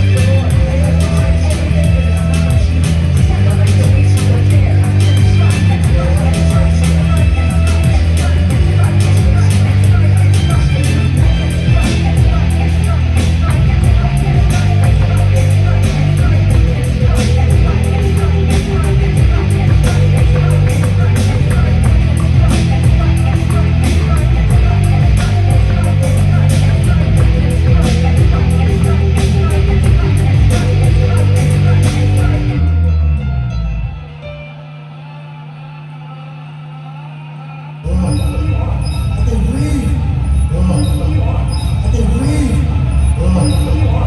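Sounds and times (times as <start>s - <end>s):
rock band playing: 0.0s - 34.6s.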